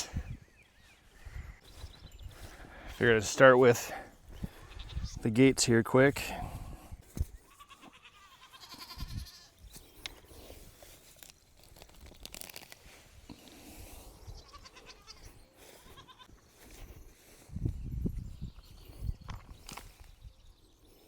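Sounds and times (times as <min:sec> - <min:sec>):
goats bleating: 0:07.4 - 0:09.6, 0:14.4 - 0:16.3.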